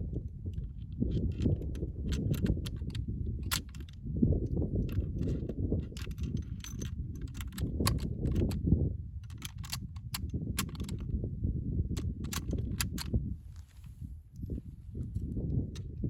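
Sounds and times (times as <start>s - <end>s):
wind buffeting microphone: 0.0s - 16.0s
sharp clicks and crackles: 0.6s - 4.0s, 9.2s - 11.1s, 12.0s - 13.2s.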